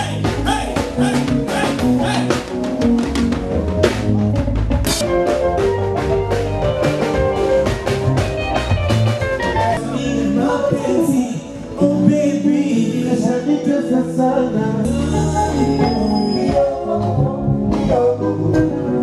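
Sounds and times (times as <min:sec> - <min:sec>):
man singing: 0:00.0 - 0:02.4, 0:09.8 - 0:19.0
drum hits: 0:00.0 - 0:09.8
live band playing: 0:00.0 - 0:19.0.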